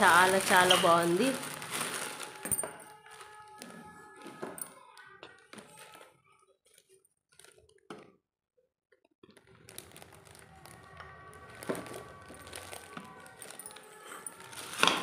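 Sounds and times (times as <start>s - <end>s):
plastic parts clicking and rustling: 9.2s - 15.0s.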